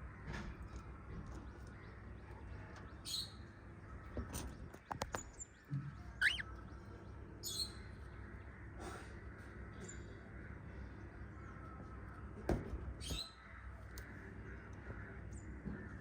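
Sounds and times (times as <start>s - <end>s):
parrots chirping: 6.2s - 6.5s.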